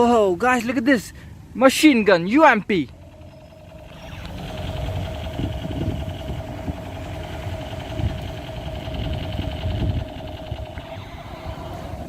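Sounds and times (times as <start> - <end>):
toy gun motor buzzing and rattling: 2.9 - 12.0.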